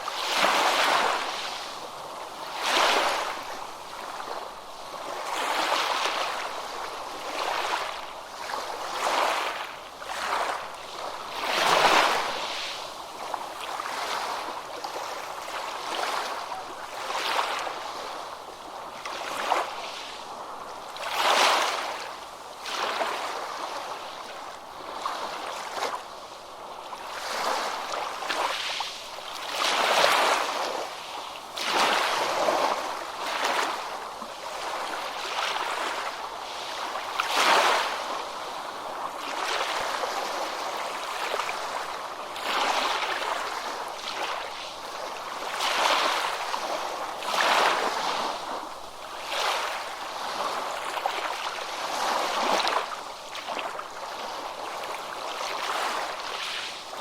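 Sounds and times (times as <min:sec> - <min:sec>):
ocean waves breaking on beach: 0:00.0 - 0:57.0.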